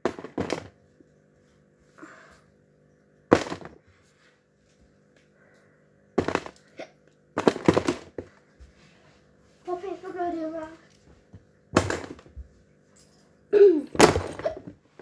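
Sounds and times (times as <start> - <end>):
toys clattering into box: 0.0 - 0.8, 3.3 - 3.8, 6.2 - 6.6, 7.4 - 8.2, 11.8 - 12.3, 13.9 - 14.8.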